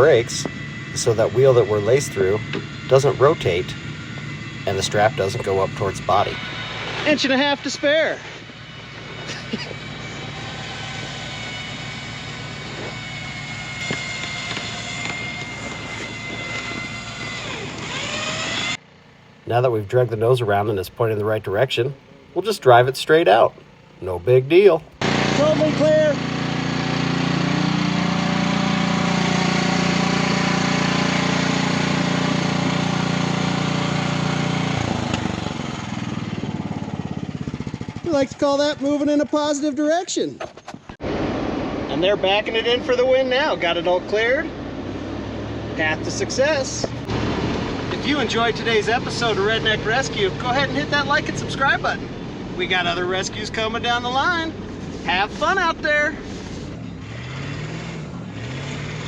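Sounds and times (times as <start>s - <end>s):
rapid regular throbbing: 0.0s - 26.9s
steady high whine: 0.0s - 27.2s
vehicle engine running: 0.0s - 39.9s, 41.0s - 59.0s.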